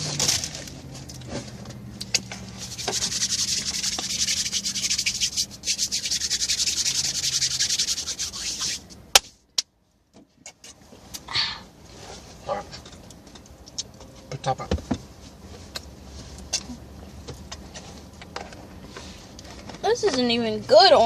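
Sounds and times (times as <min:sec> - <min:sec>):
low steady hum: 0:00.0 - 0:10.1
fast scratchy rubbing: 0:02.5 - 0:08.9.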